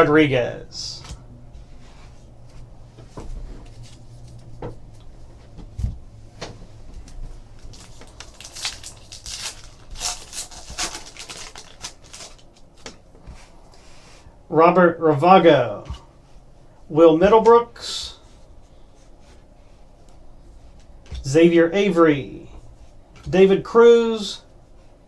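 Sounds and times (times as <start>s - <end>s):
steady low hum: 0.0s - 25.0s
cards clicking and rustling: 7.6s - 13.0s.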